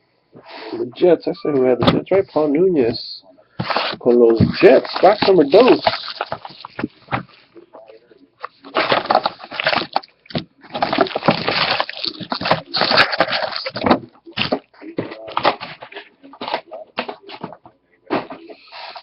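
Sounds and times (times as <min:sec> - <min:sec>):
packaging crinkling and tearing: 0:03.6 - 0:07.4, 0:08.4 - 0:17.5.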